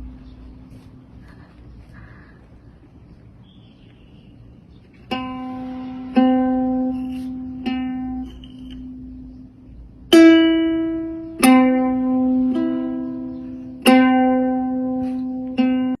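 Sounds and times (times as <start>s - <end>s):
plucked string instrument notes: 4.9s - 16.0s.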